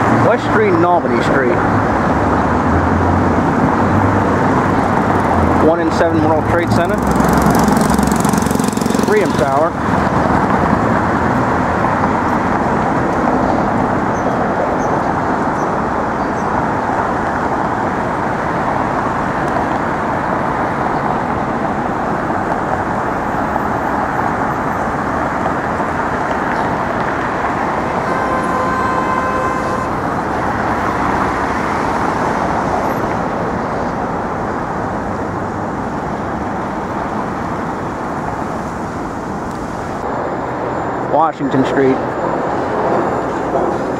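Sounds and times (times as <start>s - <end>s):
city street traffic: 0.0s - 43.9s
held horn-like tone: 27.5s - 31.9s.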